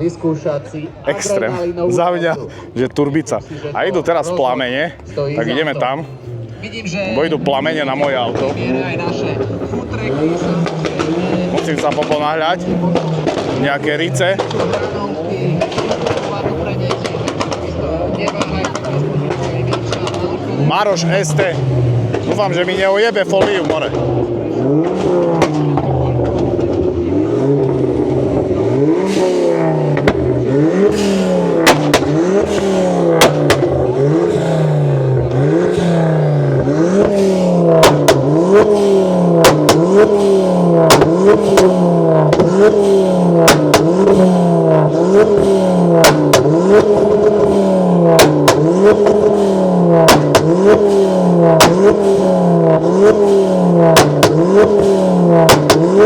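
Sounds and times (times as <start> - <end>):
car engine revving: 0.0 - 56.0
exhaust bangs and crackles: 0.0 - 56.0.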